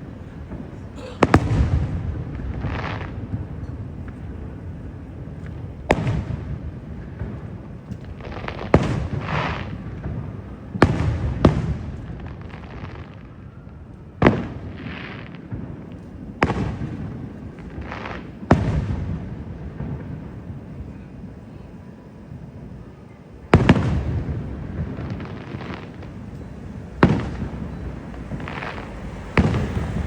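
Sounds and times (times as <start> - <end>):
rolling rumble: 15.6 - 30.0
firework shells bursting: 23.6 - 30.0.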